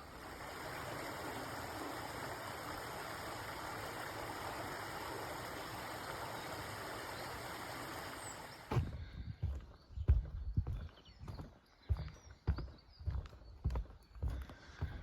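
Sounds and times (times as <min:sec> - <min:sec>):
stream running: 0:00.0 - 0:09.6.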